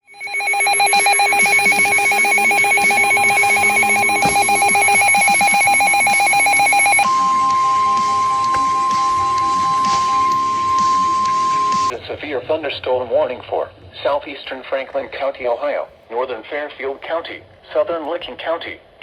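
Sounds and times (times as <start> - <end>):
steady single-pitch tone: 0.0 - 11.9
warbling electronic alert tone: 0.0 - 11.9.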